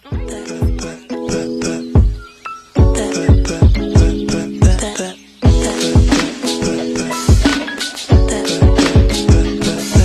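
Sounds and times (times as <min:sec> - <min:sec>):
music with heavy beat: 0:02.8 - 0:04.9, 0:05.5 - 0:10.0.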